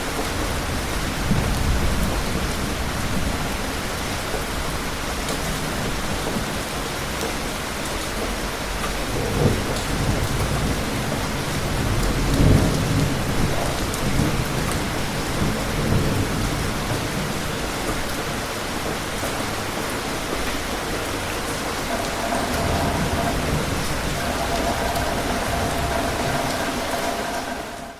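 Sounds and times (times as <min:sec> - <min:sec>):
steady rain: 0:00.0 - 0:27.9
low rolls of thunder: 0:21.5 - 0:27.9.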